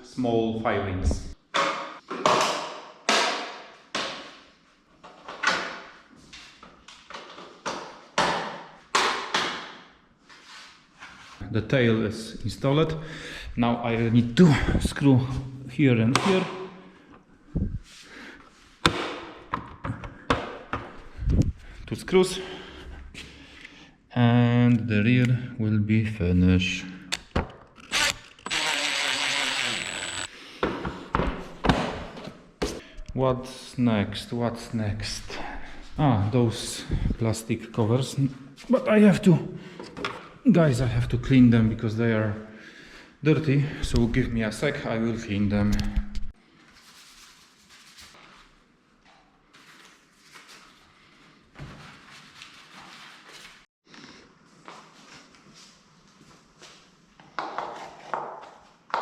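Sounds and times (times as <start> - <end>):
power screwdriver whining: 27.8 - 30.3.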